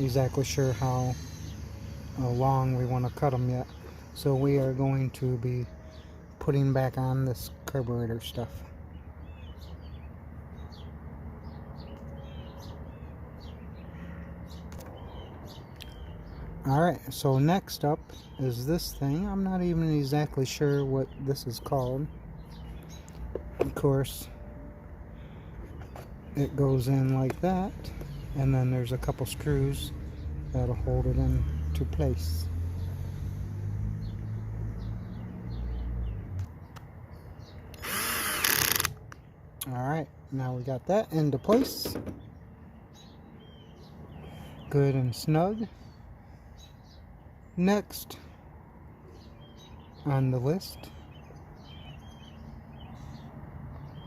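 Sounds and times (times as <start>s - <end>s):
small birds chirping: 0.0s - 54.0s.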